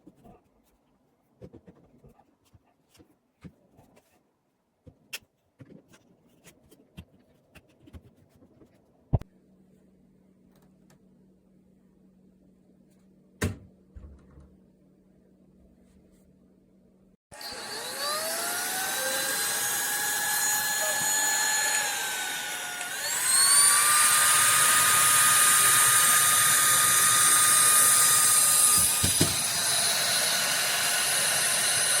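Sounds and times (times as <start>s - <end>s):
vacuum motor whine: 17.3s - 32.0s.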